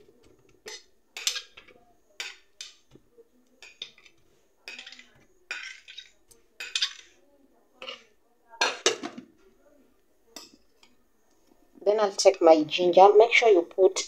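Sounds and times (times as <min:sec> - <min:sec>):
utensils and dishes clinking: 0:00.0 - 0:03.0, 0:03.6 - 0:07.2, 0:07.8 - 0:09.3.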